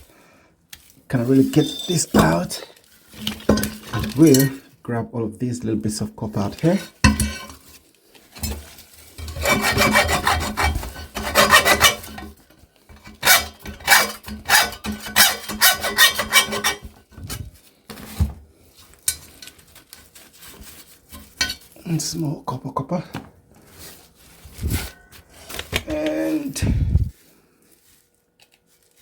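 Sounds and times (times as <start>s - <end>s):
metal-on-metal scraping: 1.1s - 4.6s, 7.0s - 17.2s.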